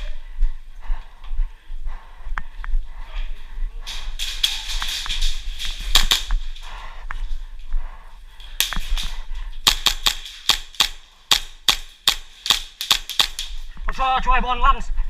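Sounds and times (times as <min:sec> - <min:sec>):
airsoft guns firing: 0:04.0 - 0:06.6, 0:08.6 - 0:13.7.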